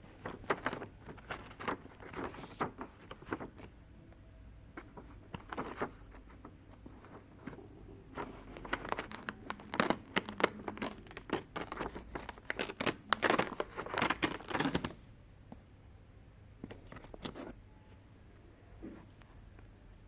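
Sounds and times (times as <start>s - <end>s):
paper crinkling and tearing: 0.1s - 3.7s, 8.2s - 15.0s.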